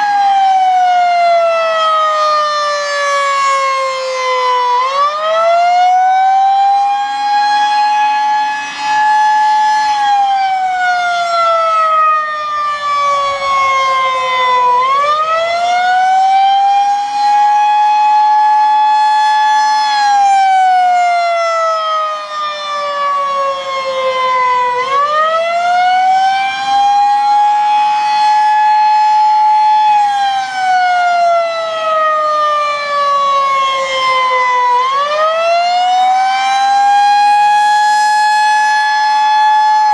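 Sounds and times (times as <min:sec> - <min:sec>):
warning siren wailing: 0:00.0 - 0:39.9.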